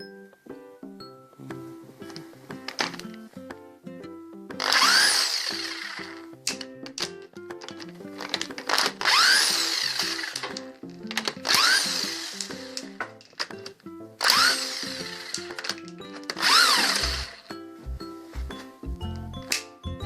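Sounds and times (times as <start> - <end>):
background music: 0.0 - 20.0
power drill whining: 4.6 - 6.3, 8.2 - 10.6, 11.2 - 13.0, 14.2 - 17.5.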